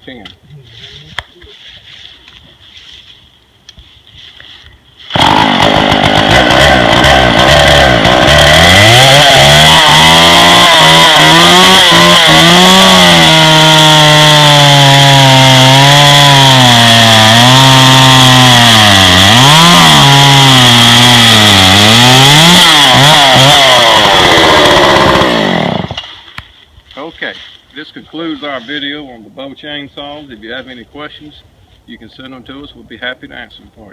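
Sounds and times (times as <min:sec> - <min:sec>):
chainsaw revving and cutting: 0:05.1 - 0:26.1.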